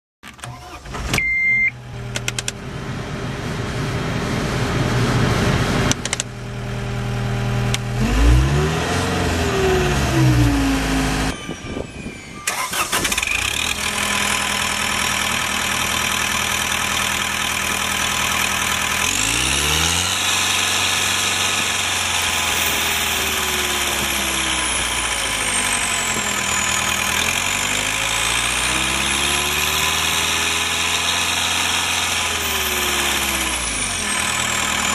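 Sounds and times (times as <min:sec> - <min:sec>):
diesel engine starting and revving: 0:00.3 - 0:34.9
short beep: 0:01.2 - 0:01.8.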